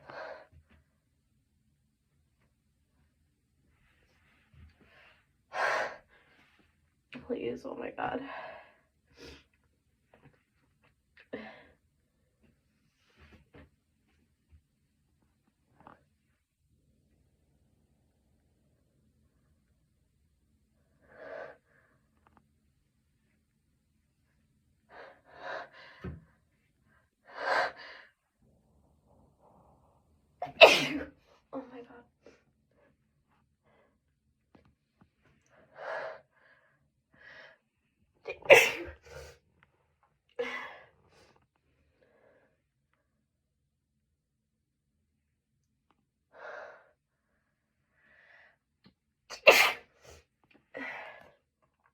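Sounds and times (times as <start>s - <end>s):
loud sharp sneeze: 30.4s - 31.1s, 38.4s - 39.0s, 49.3s - 50.0s.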